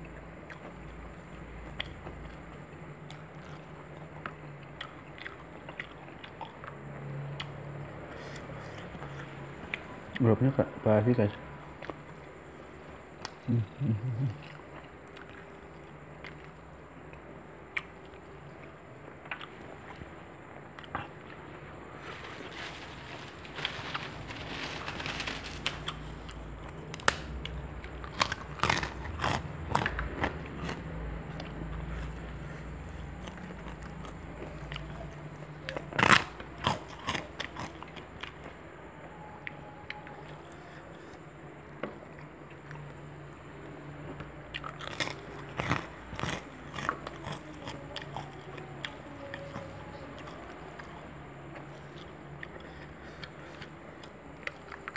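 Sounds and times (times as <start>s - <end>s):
steady low hum: 0.0s - 54.9s
person chewing: 0.1s - 10.2s, 13.1s - 38.5s, 44.5s - 54.9s
sharp crunches and clicks: 20.7s - 30.8s.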